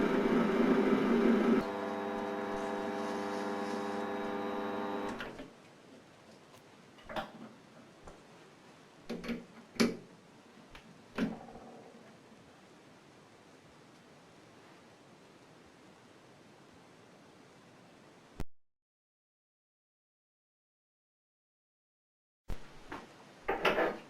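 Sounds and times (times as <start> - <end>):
steady machine hum: 0.0 - 5.2.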